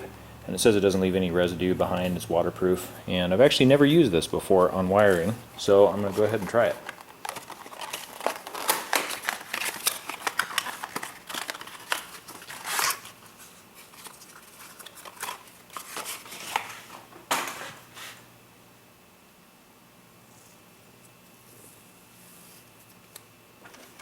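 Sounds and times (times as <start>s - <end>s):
tape rustling and crinkling: 5.0s - 17.0s
tape ripping off roll: 7.0s - 13.2s.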